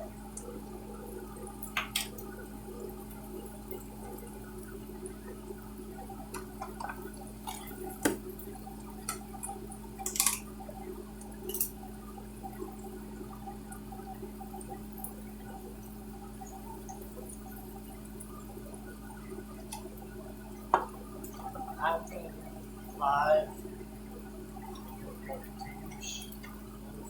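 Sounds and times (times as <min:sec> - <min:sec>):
steady low hum: 0:00.0 - 0:27.0
utensil tapping plastic containers: 0:08.0 - 0:08.2.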